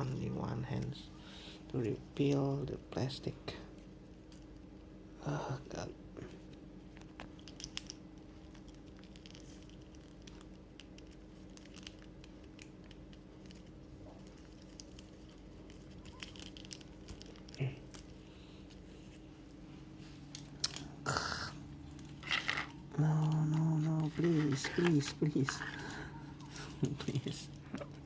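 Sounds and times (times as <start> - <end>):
plastic film crinkling: 8.7 - 19.5.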